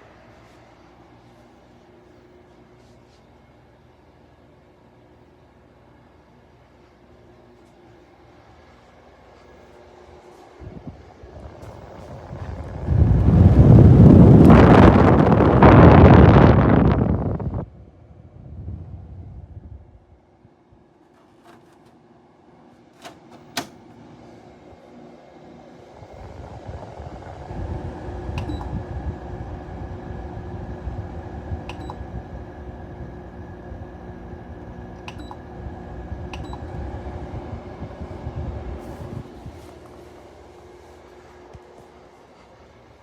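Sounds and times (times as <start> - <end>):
air conditioner motor humming: 0.0 - 43.0
air conditioner switch click: 23.0 - 24.0, 28.3 - 28.8, 31.6 - 32.1, 35.0 - 35.4, 36.3 - 36.8.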